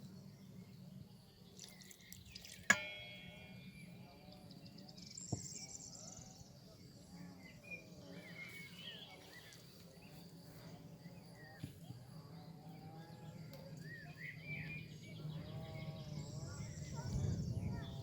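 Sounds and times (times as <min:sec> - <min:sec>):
sharp ringing clink: 0:02.6 - 0:04.1.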